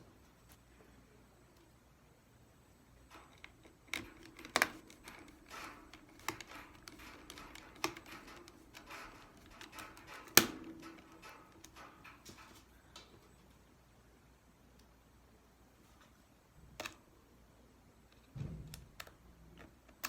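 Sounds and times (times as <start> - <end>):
tools being handled: 3.0 - 13.3.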